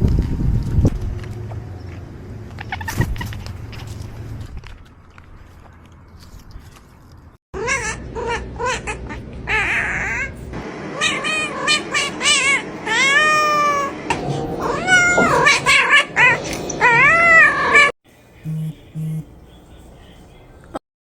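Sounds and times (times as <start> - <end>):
cat meowing: 11.0 - 14.0, 14.6 - 17.9.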